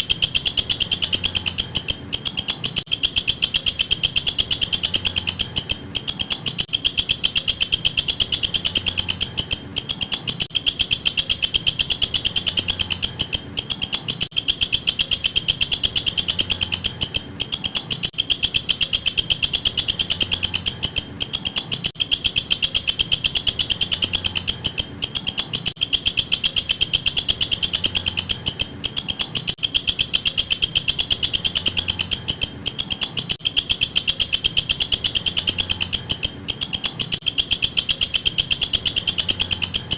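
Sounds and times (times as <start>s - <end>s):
insect high-pitched trill: 0.0s - 39.9s.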